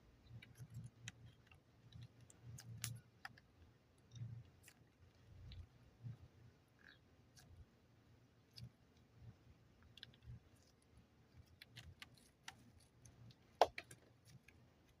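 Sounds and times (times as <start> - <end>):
clicks and taps handling clay: 11.4 - 15.0.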